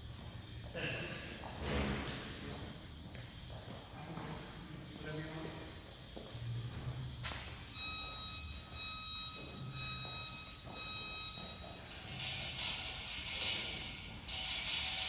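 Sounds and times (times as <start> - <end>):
electronic timer beeping: 7.7 - 12.4.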